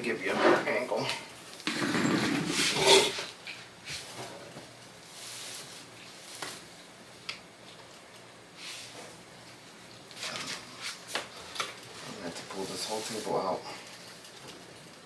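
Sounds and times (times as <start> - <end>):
objects rustling and scraping on table: 0.2 - 0.8, 1.7 - 6.7.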